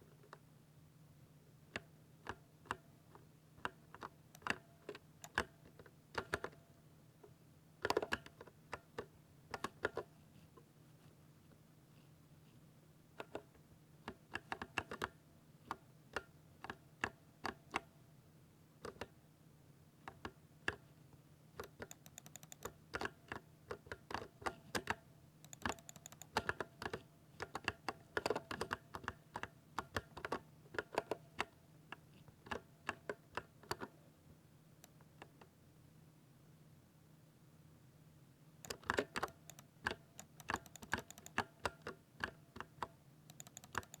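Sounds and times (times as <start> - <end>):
mechanical keyboard typing: 21.6 - 23.2, 24.0 - 29.2, 38.6 - 44.0.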